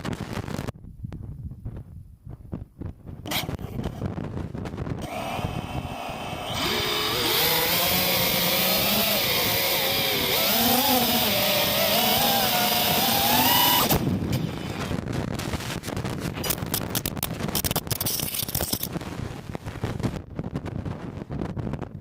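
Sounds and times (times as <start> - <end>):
drone motors whining: 5.0 - 14.9.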